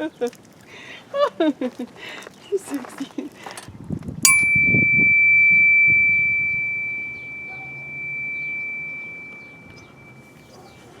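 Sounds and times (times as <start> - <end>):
struck metal ringing: 4.3 - 10.4.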